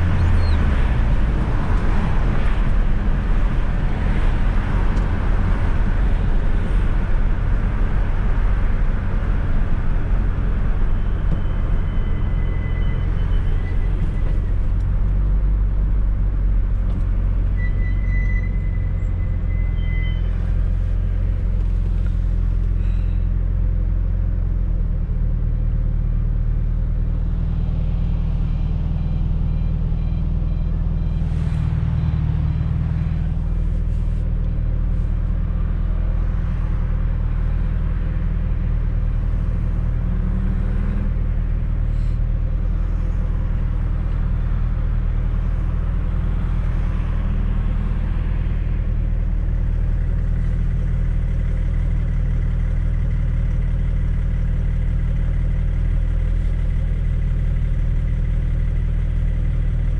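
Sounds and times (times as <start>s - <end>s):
tyre and road noise: 0.0s - 25.0s
car engine running: 0.0s - 59.9s.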